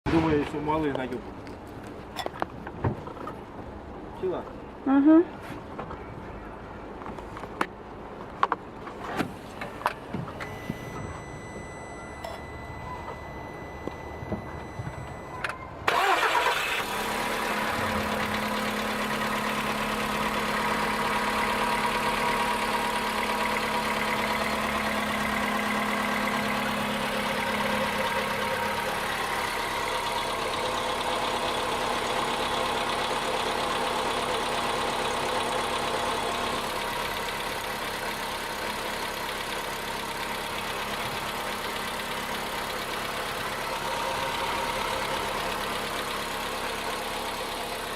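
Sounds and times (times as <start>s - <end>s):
car engine starting: 8.9s - 47.9s
car engine idling with knock: 17.6s - 47.9s.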